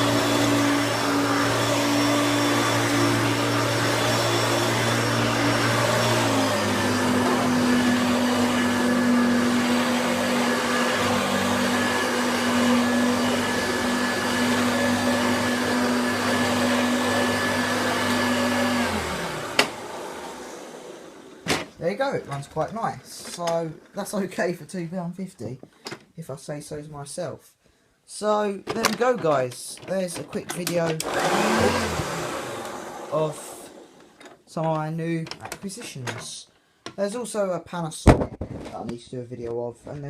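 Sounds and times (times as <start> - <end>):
vacuum motor winding down: 0.0 - 21.5, 31.0 - 34.2
vacuum cleaner running: 0.0 - 22.1, 30.7 - 34.3.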